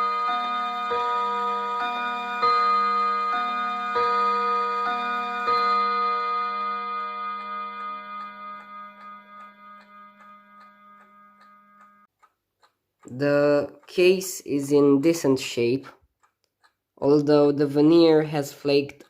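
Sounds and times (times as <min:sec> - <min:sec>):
clock chime rods striking: 0:00.0 - 0:12.1
clock ticking: 0:00.0 - 0:19.0.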